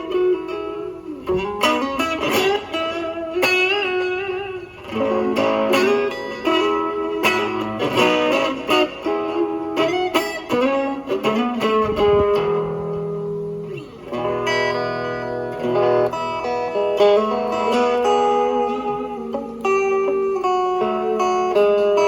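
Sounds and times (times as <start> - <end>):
electric guitar playing: 0.0 - 22.0.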